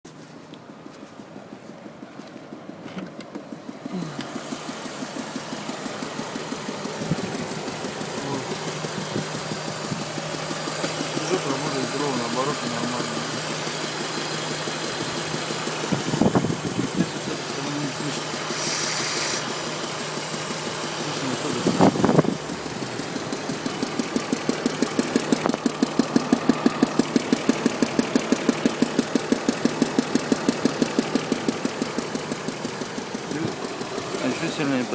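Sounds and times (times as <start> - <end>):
car engine idling with knock: 0.3 - 34.9.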